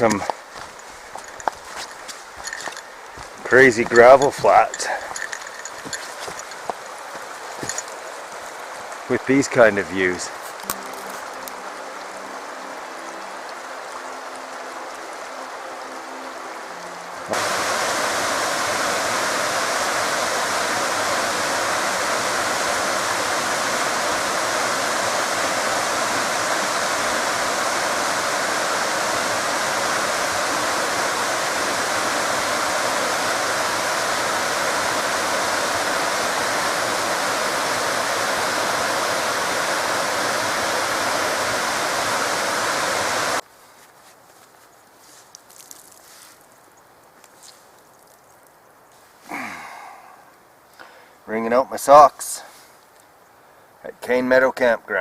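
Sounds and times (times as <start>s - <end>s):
river rushing: 0.0s - 43.4s
faint outdoor noise: 0.0s - 55.0s.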